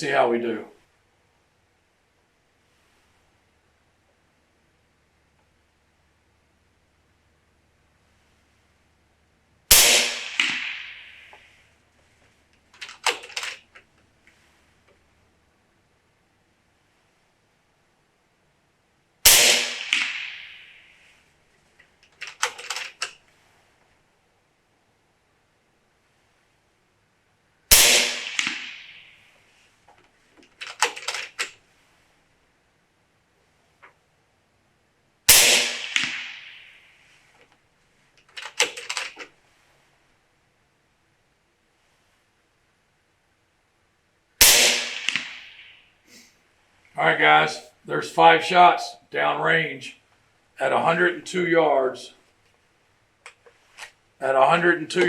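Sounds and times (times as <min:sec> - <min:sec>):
air rifle shot: 0:09.7 - 0:11.6, 0:19.2 - 0:21.1, 0:27.7 - 0:29.3, 0:35.3 - 0:36.9, 0:44.4 - 0:45.8
fainter crack: 0:09.8 - 0:15.0, 0:19.3 - 0:23.2, 0:27.8 - 0:31.6, 0:35.4 - 0:39.4, 0:44.4 - 0:45.8
metallic lever clicks: 0:12.8 - 0:13.6, 0:22.1 - 0:23.1, 0:30.6 - 0:31.5, 0:38.3 - 0:39.3.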